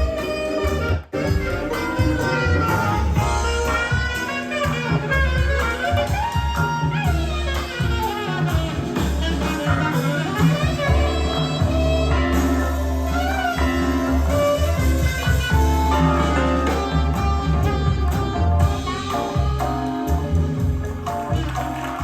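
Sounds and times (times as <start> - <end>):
jazz with saxophone bass and drums: 0.0 - 22.0.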